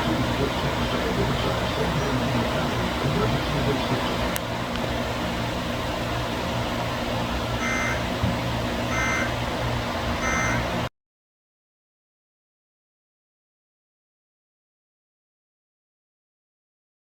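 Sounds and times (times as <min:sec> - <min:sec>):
steady rushing noise: 0:00.0 - 0:10.9.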